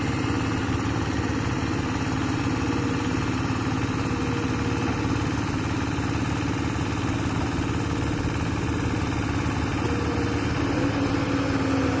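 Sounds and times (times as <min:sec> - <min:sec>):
diesel engine throbbing: 0:00.0 - 0:12.0
steady whine: 0:08.0 - 0:12.0.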